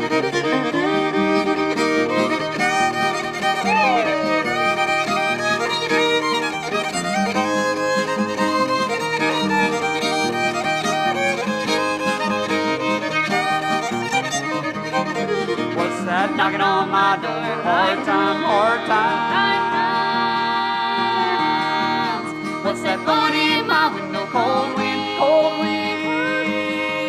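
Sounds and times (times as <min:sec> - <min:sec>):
fiddle playing: 0:00.0 - 0:27.0
folk accompaniment: 0:00.0 - 0:27.0.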